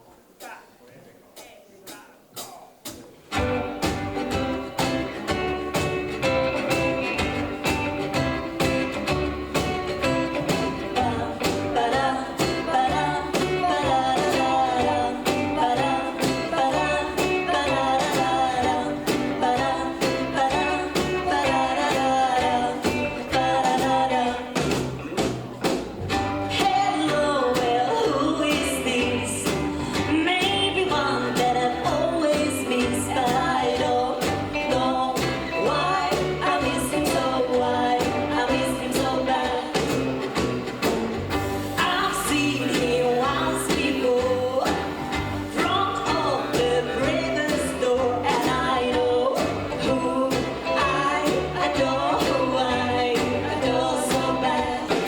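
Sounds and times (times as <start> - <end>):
rockabilly band playing: 1.4 - 55.0
person singing: 10.0 - 25.3, 26.5 - 40.1, 41.8 - 55.0.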